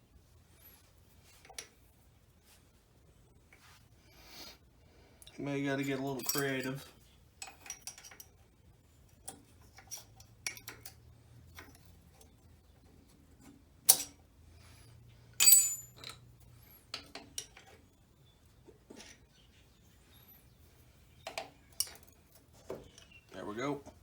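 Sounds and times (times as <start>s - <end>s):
metal tools clinking on engine parts: 5.6s - 8.4s, 9.1s - 12.4s, 15.4s - 17.8s, 21.2s - 23.6s
ringing metal clank: 15.4s - 16.2s.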